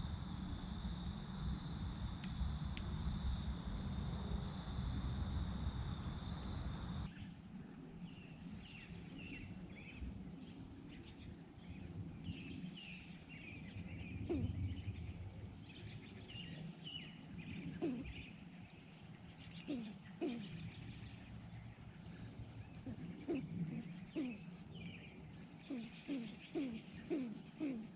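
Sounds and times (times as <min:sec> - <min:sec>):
low background rumble: 0:00.0 - 0:07.1
small birds chirping: 0:15.7 - 0:27.9.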